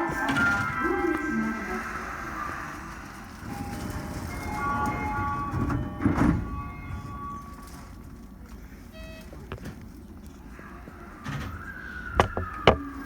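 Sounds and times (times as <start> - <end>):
low train rumble: 0.0 - 13.0
short electronic tone: 8.9 - 9.7
electronic chime melody: 9.0 - 9.5.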